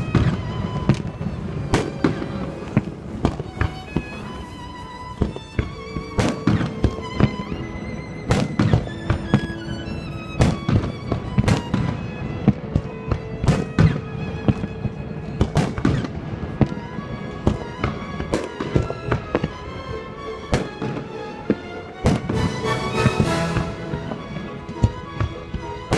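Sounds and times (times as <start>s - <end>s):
music playing: 22.2s - 25.8s.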